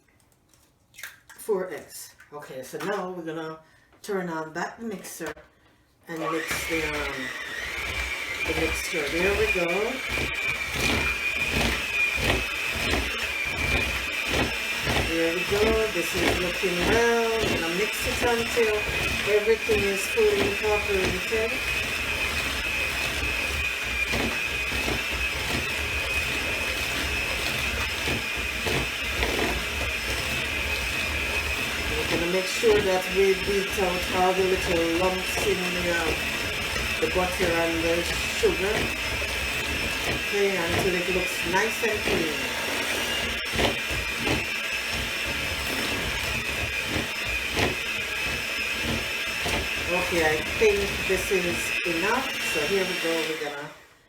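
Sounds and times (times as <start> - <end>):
electric mixer whining: 6.1 - 54.0.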